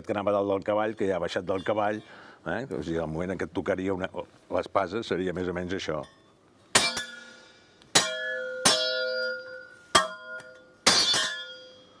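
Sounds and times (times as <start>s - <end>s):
metal prop struck ringing: 6.8s - 7.4s, 8.0s - 12.0s.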